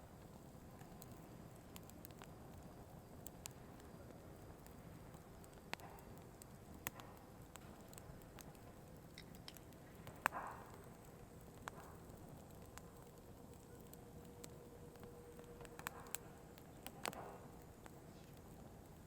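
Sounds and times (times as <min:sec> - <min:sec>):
faint steady hiss: 0:00.0 - 0:19.0
firewood crackling and popping: 0:00.0 - 0:19.0.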